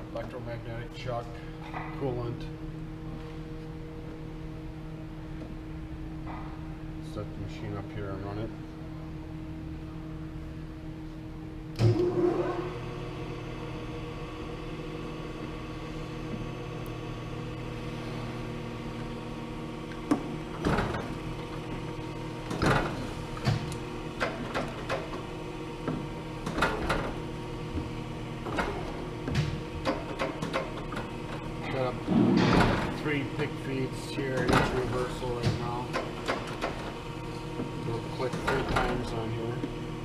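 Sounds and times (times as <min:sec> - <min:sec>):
surface grinder humming: 0:11.9 - 0:13.2
loud clunk: 0:32.1 - 0:33.0.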